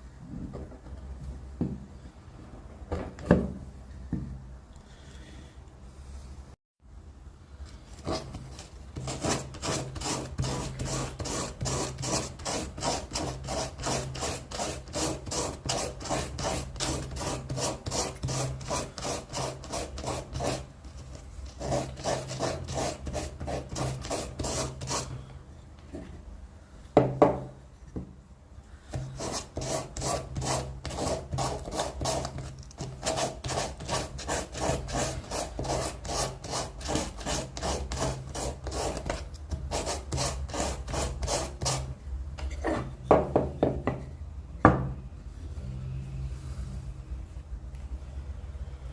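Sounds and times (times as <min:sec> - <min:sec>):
rasp scraping wood: 0:08.0 - 0:25.2, 0:28.9 - 0:41.9.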